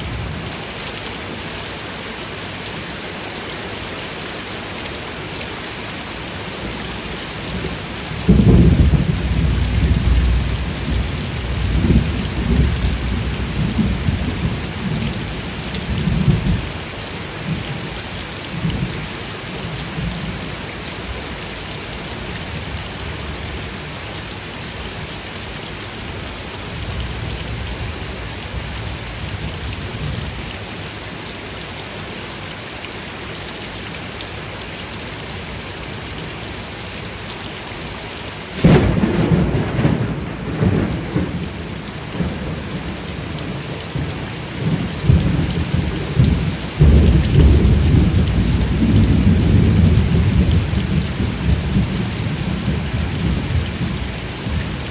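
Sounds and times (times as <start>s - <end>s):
steady rain falling: 0.0s - 54.9s
thunder rumbling: 8.2s - 16.6s, 38.6s - 54.8s.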